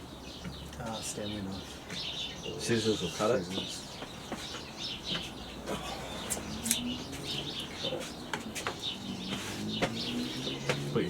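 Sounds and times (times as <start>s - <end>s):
small birds chirping: 0.0s - 11.0s.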